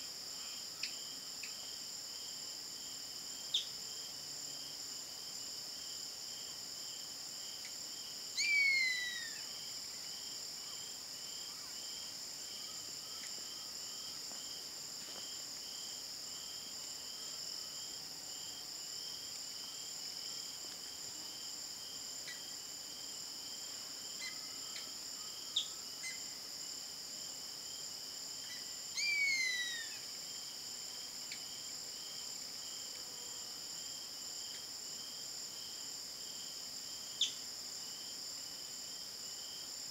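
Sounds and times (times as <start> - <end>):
high insect chorus: 0.0 - 39.9
pulsing insect call: 7.6 - 14.3, 28.4 - 30.2, 37.2 - 37.4.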